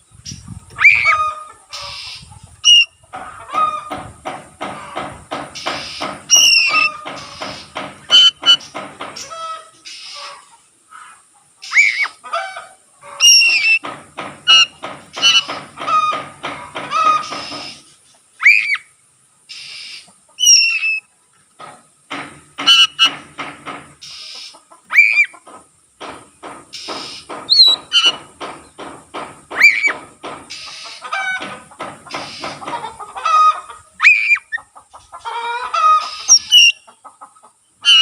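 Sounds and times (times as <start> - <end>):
bird chattering: 5.5 - 10.4, 14.5 - 17.9, 26.7 - 28.8, 29.5 - 33.0, 35.8 - 36.9
bird singing whistled notes: 27.0 - 28.2, 36.2 - 36.8.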